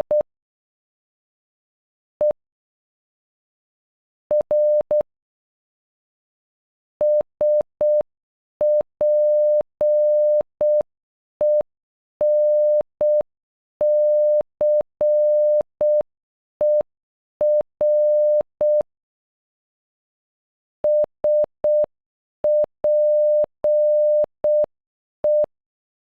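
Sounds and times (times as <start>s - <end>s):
morse code beeps: 8.6s - 10.8s, 13.8s - 16.0s, 17.4s - 18.8s, 20.9s - 21.9s, 22.5s - 24.7s, 25.3s - 25.5s.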